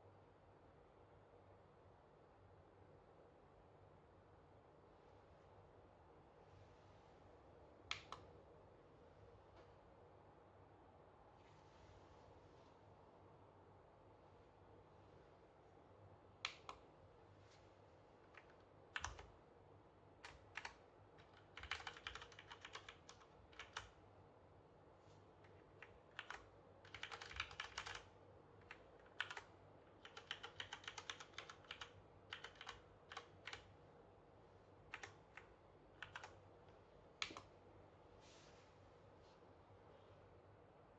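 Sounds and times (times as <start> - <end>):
mechanical keyboard typing: 18.3 - 19.3, 20.2 - 24.0, 25.5 - 33.7, 34.9 - 36.4.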